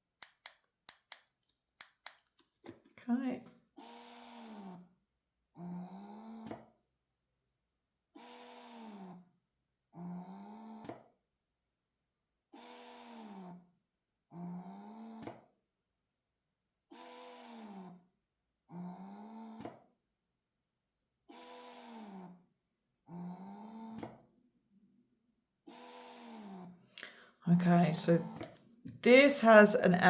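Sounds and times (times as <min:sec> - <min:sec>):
breast pump motor whirring: 0:03.8 - 0:04.8, 0:16.9 - 0:18.0, 0:21.3 - 0:22.4, 0:25.7 - 0:26.8, 0:28.0 - 0:28.6.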